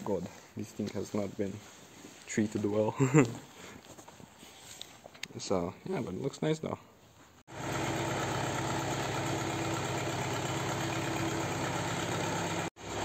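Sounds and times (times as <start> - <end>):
diesel tractor engine idling: 7.6 - 13.0.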